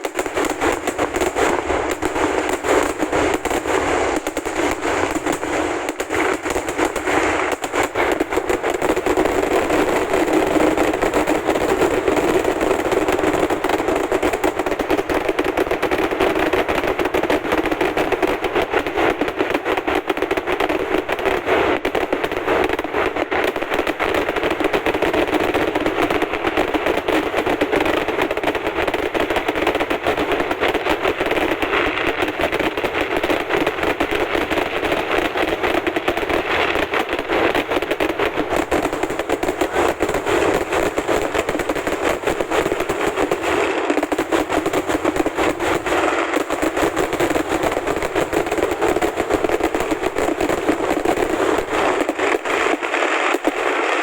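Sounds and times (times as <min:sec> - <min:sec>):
firecracker explosions: 0:00.0 - 0:54.0.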